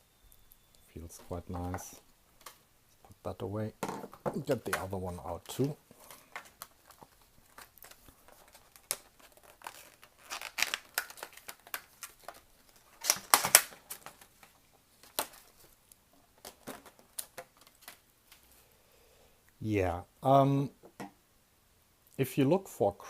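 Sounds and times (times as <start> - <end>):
packaging crinkling and tearing: 4.5 - 15.8, 16.4 - 18.1.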